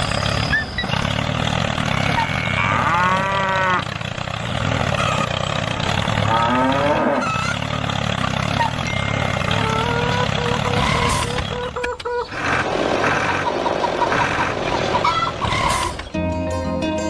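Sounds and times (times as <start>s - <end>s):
engine-like rumble: 0.0s - 17.0s
cow-like moo: 2.0s - 3.9s, 6.2s - 7.6s.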